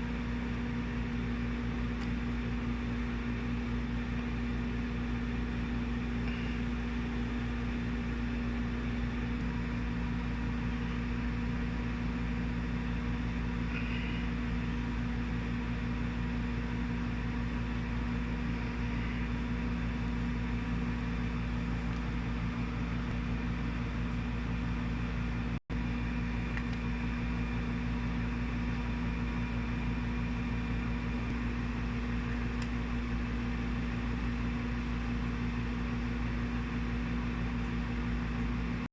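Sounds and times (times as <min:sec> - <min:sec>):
low mechanical hum: 0:00.0 - 0:38.9.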